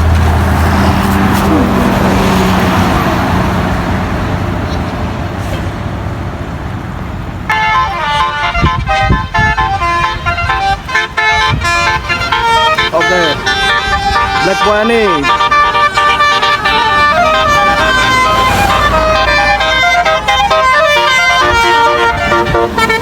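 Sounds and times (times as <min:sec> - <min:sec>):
multi-tone bus horn melody: 0:00.0 - 0:05.2, 0:07.2 - 0:23.0
bus diesel engine passing: 0:00.0 - 0:23.0.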